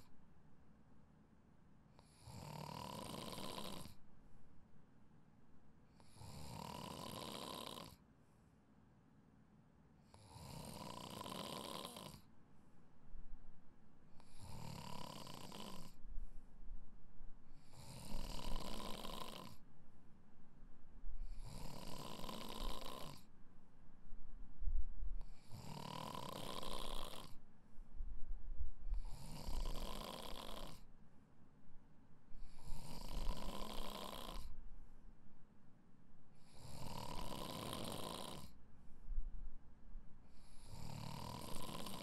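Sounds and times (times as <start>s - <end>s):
person snoring: 2.0s - 4.0s, 6.0s - 8.0s, 10.1s - 12.3s, 14.2s - 16.0s, 17.6s - 19.6s, 21.3s - 23.2s, 25.4s - 27.4s, 29.0s - 30.8s, 32.4s - 34.5s, 36.4s - 38.6s, 40.4s - 42.0s.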